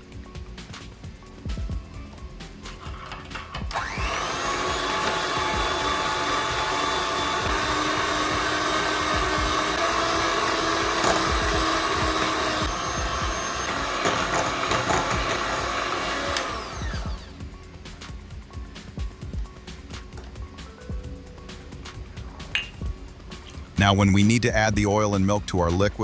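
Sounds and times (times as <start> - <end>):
electric mixer whining: 3.0 - 17.5.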